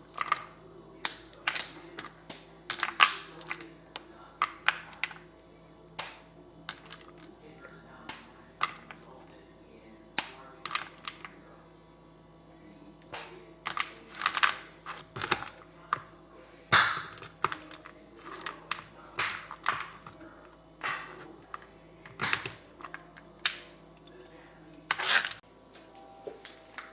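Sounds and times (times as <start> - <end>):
kitchen utensils clicking and scraping: 17.0 - 25.4.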